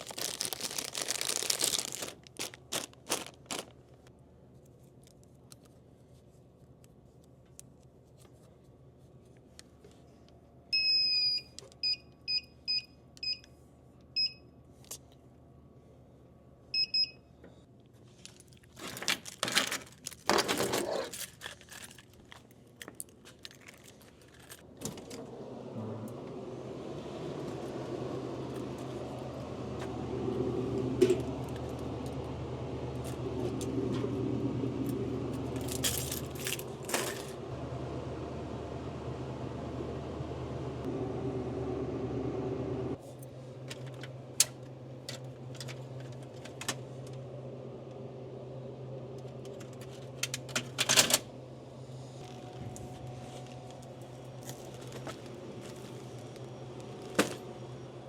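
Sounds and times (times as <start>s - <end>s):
rustling and handling noise: 0.0s - 10.5s, 17.6s - 25.2s, 35.3s - 37.4s, 52.1s - 57.7s
steady low hum: 24.6s - 58.0s.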